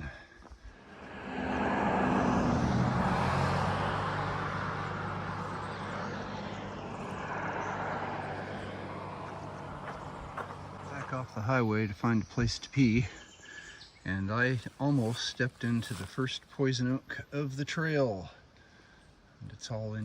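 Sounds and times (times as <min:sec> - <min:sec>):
vehicle passing on highway: 0:00.7 - 0:11.7.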